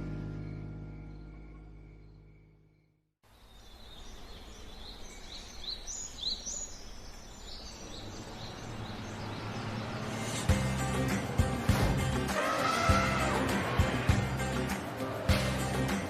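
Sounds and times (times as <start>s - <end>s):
background music: 0.0s - 1.6s, 10.0s - 16.0s
birds chirping: 0.0s - 13.3s
outdoor ambience: 0.0s - 16.0s.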